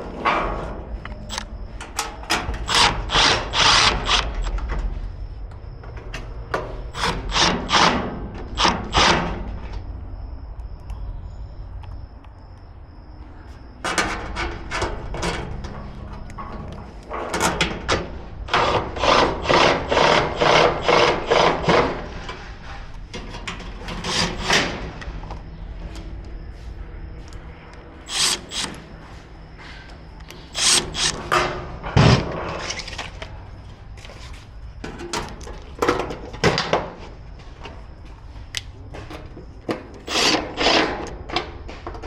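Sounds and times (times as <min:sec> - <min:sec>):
hand ratchet scraping strokes: 0:28.1 - 0:28.8, 0:30.5 - 0:31.2, 0:40.1 - 0:41.0.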